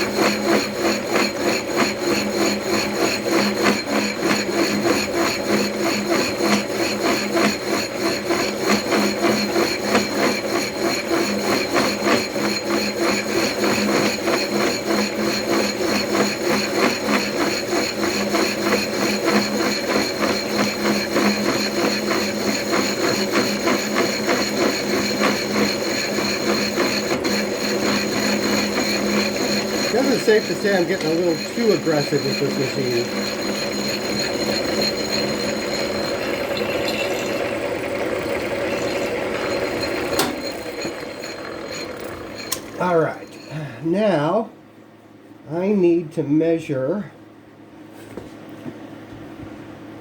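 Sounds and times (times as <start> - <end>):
milling machine motor hum: 0.0 - 43.9
cutter rattling chatter: 27.8 - 36.5.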